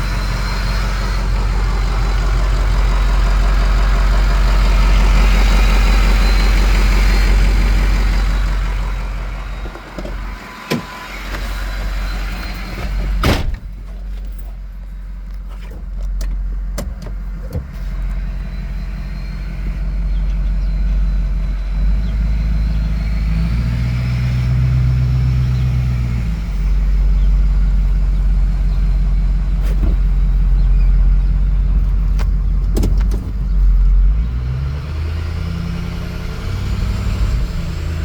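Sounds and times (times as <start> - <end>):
high turbo whistle: 0.0 - 3.2, 4.2 - 13.2, 17.9 - 27.0
diesel engine running: 0.0 - 38.0.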